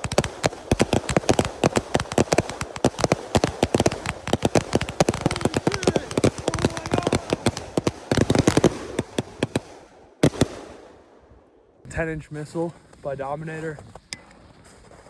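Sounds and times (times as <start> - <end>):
firework cake cracking and popping: 0.0 - 10.8.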